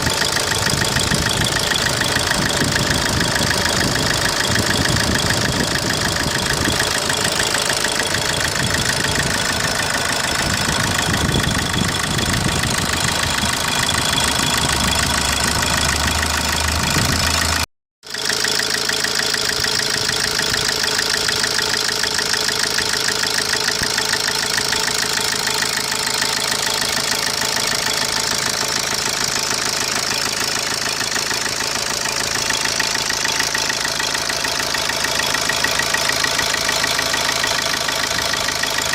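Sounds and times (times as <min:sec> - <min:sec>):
diesel engine idling with ticking: 0:00.0 - 0:38.9.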